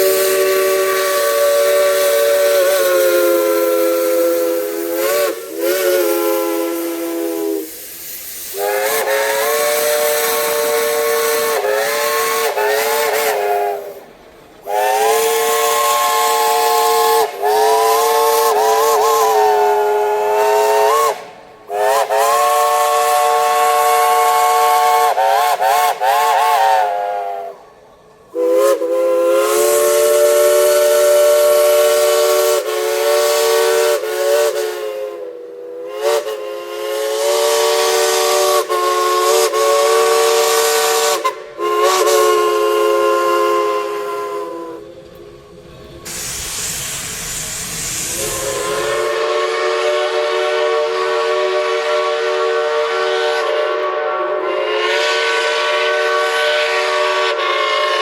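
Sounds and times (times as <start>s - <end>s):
steam hiss: 0.0s - 58.0s
steam locomotive whistle: 0.0s - 58.0s.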